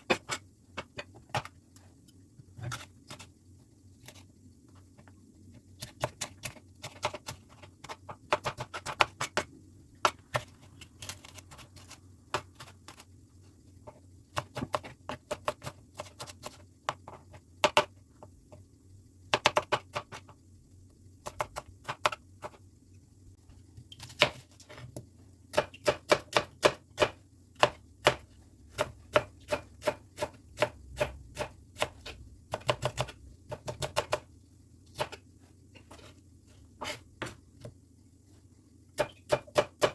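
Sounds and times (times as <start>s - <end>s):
knife chopping on cutting board: 24.1s - 24.4s, 25.5s - 34.2s, 39.0s - 39.9s.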